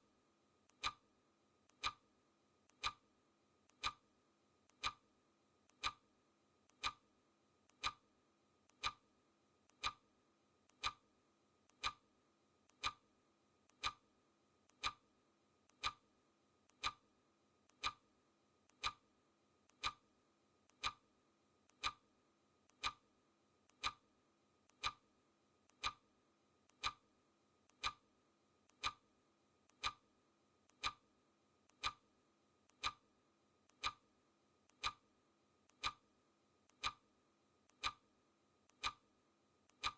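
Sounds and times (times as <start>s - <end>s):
clock ticking: 0.7s - 1.0s, 1.7s - 2.0s, 2.7s - 3.0s, 3.7s - 4.0s, 4.7s - 5.0s, 5.7s - 6.0s, 6.7s - 7.0s, 7.7s - 8.0s, 8.7s - 9.0s, 9.7s - 10.0s, 10.7s - 11.0s, 11.7s - 12.0s, 12.7s - 13.0s, 13.7s - 14.0s, 14.7s - 15.0s, 15.7s - 16.0s, 16.7s - 17.0s, 17.7s - 18.0s, 18.7s - 19.0s, 19.7s - 20.0s, 20.7s - 21.0s, 21.7s - 22.0s, 22.7s - 23.0s, 23.7s - 24.0s, 24.7s - 25.0s, 25.7s - 26.0s, 26.7s - 27.0s, 27.7s - 28.0s, 28.7s - 29.0s, 29.7s - 30.0s, 30.7s - 31.0s, 31.7s - 32.0s, 32.7s - 33.0s, 33.7s - 34.0s, 34.7s - 35.0s, 35.7s - 36.0s, 36.7s - 37.0s, 37.7s - 38.0s, 38.7s - 39.0s.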